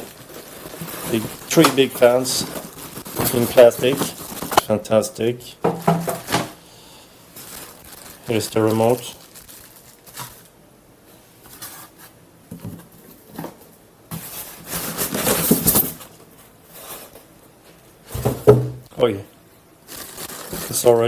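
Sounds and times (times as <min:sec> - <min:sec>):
packaging rustling: 0:00.0 - 0:04.7, 0:07.3 - 0:10.6, 0:14.2 - 0:16.2, 0:19.9 - 0:21.0.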